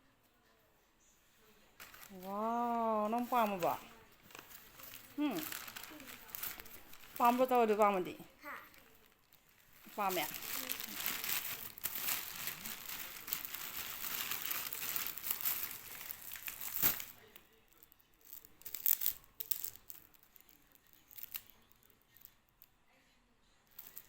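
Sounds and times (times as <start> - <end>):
gift wrap crinkling and tearing: 1.8 - 22.4, 23.7 - 24.0.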